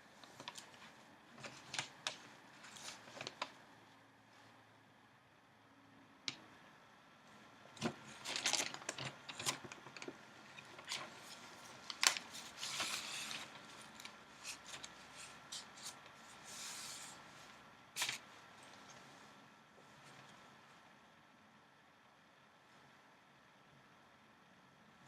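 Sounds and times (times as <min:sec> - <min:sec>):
paper crackling and rustling: 0:00.2 - 0:03.6, 0:07.8 - 0:18.3.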